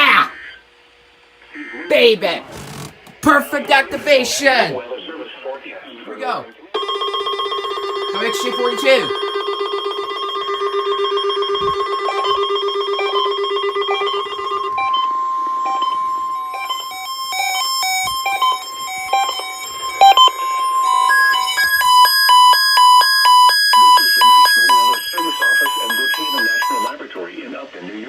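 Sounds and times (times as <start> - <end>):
steady high tone: 6.2 - 27.0
overlapping electronic beeps: 6.8 - 27.0.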